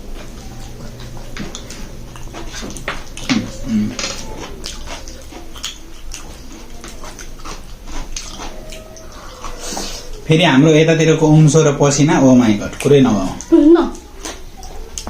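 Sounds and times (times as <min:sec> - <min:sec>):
wet chewing and lip smacks: 0:00.0 - 0:10.3, 0:11.9 - 0:15.0.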